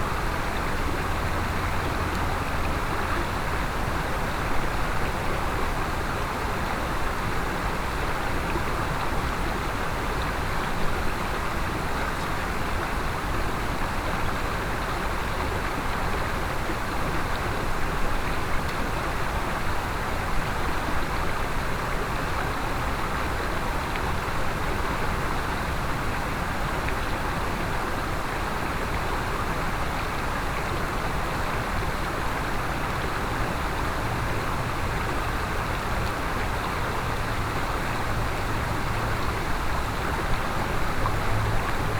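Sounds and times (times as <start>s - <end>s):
stream rushing over rocks: 22.4s - 41.9s.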